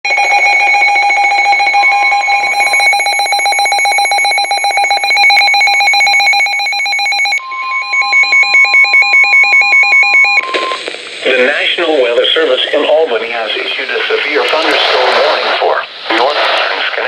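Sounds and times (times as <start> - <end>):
steady high alert tone: 0.1 - 10.6.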